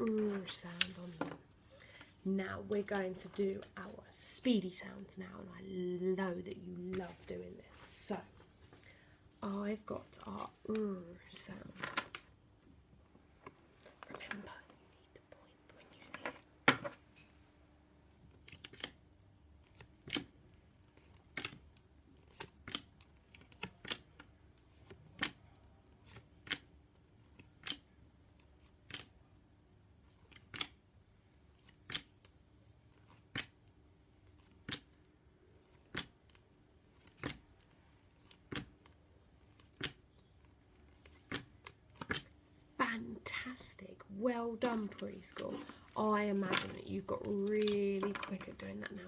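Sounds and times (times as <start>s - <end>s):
faint steady hum: 0.0s - 49.0s
flashcards being flicked: 18.3s - 19.0s, 19.6s - 25.4s, 26.0s - 29.1s, 30.0s - 30.8s, 31.6s - 42.3s, 44.5s - 49.0s.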